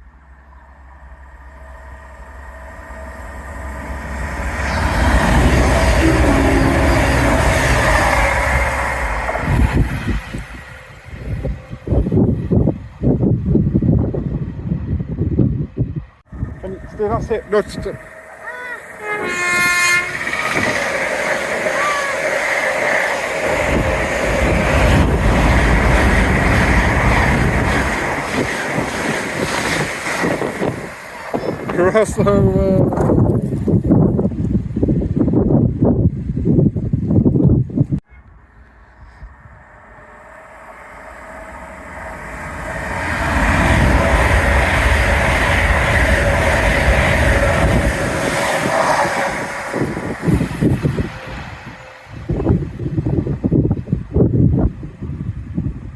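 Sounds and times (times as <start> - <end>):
train passing at speed: 0.0 - 55.9
wind buffeting microphone: 3.5 - 38.0, 41.1 - 55.9.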